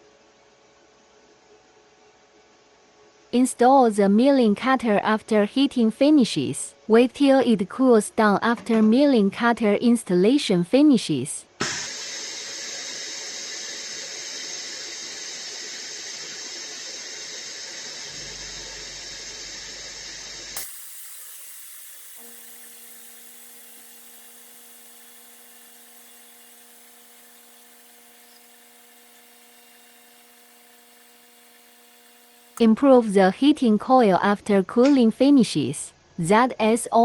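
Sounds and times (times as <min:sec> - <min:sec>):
machine cooling hiss and whine: 0:11.6 - 0:32.6
faint steady hum: 0:12.8 - 0:34.3.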